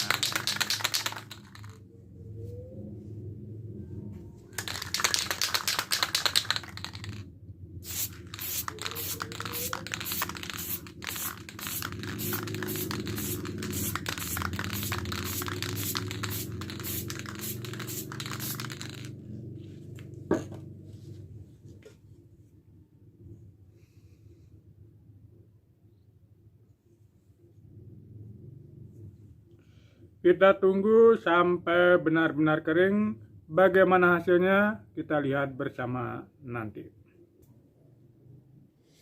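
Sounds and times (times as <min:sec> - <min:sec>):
aerosol can spraying: 0:00.0 - 0:01.7, 0:04.6 - 0:07.2, 0:07.8 - 0:19.1.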